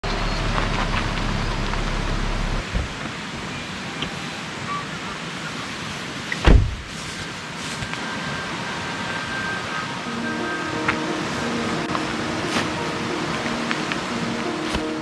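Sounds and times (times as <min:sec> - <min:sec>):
steady outdoor wind or rain noise: 0:00.0 - 0:15.0
loud thump: 0:06.4 - 0:06.8.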